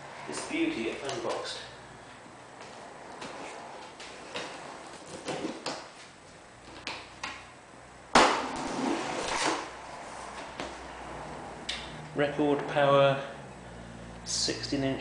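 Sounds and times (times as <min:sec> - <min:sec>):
loud thump or rip: 0:08.1 - 0:09.7.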